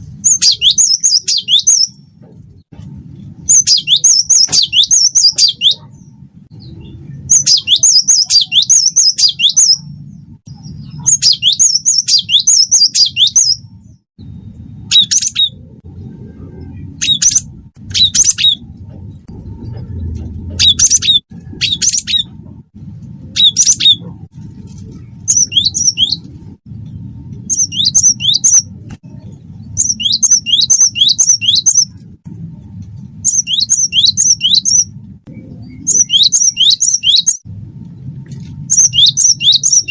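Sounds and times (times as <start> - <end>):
low hum: 0.0 - 39.9
bird singing sharp high notes: 0.2 - 2.0, 3.4 - 9.9, 10.5 - 15.7, 25.3 - 26.3, 27.4 - 28.7, 29.7 - 32.0, 33.2 - 37.4, 38.7 - 39.9.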